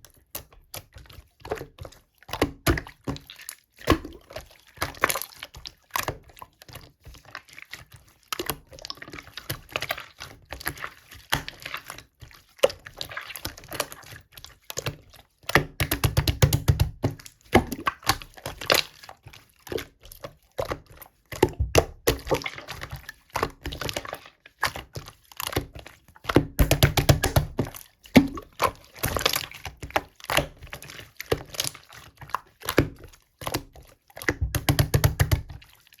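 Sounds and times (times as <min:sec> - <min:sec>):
slime squishing and popping: 0:26.3 - 0:29.6.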